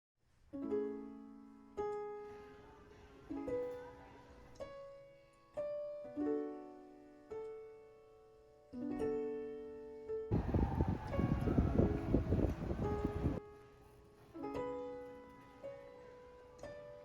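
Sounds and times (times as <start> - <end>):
gentle solo piano: 10.3 - 13.4.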